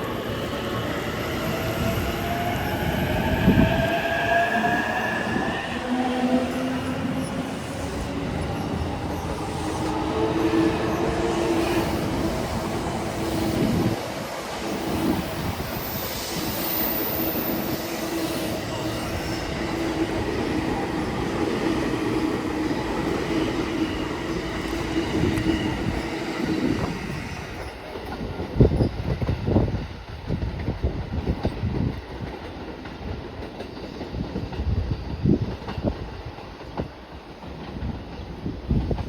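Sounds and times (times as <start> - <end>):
electric train rolling: 0.0 - 39.0.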